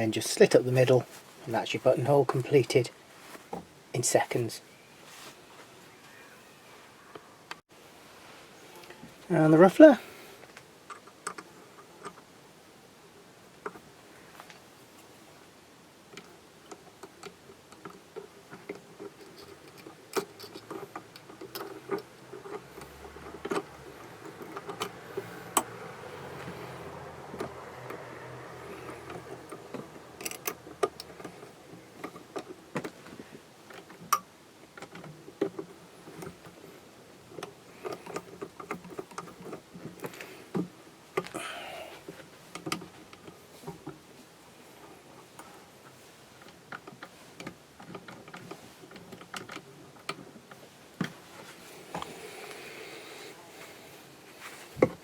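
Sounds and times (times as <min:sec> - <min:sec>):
faint steady sound: 0:00.0 - 0:55.0
small metal parts clicking: 0:16.1 - 0:25.7, 0:28.6 - 0:32.6.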